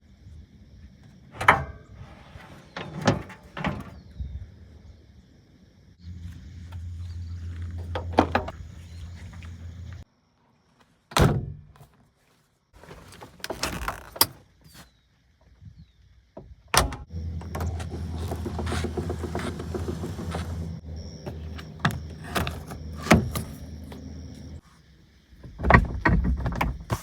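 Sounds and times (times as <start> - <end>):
car engine idling: 17.1 - 24.6.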